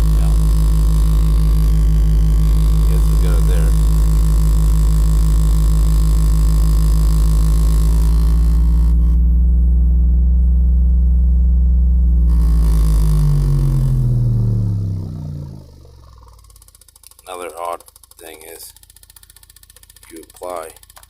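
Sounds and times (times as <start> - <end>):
pulsing clicking rattle: 0.0 - 9.2, 12.3 - 21.0
subwoofer low bass tone: 0.0 - 16.4.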